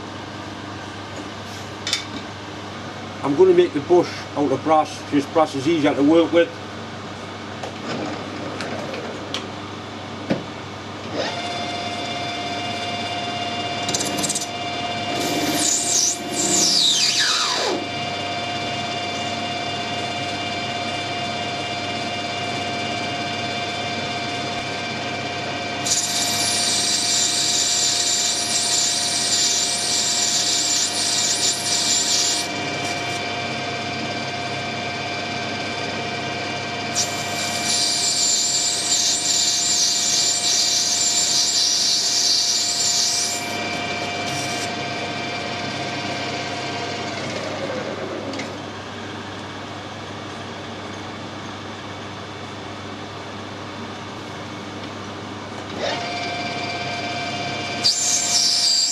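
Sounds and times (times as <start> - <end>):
lathe motor humming: 11.0 - 49.4.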